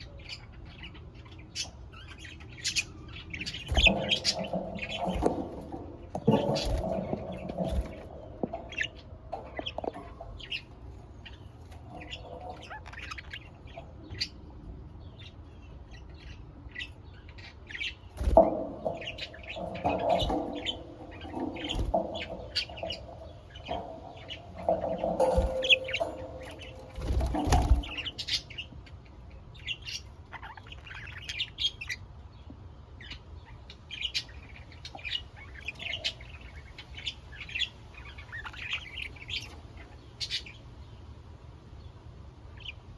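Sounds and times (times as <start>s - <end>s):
budgerigars chirping: 0.0s - 32.1s, 33.0s - 40.9s
wings fluttering: 3.4s - 13.3s, 18.1s - 28.5s.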